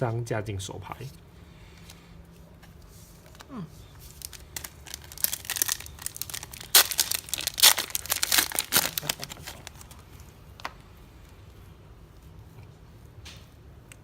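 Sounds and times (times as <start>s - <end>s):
foil wrapper torn and crinkled: 3.2s - 10.3s.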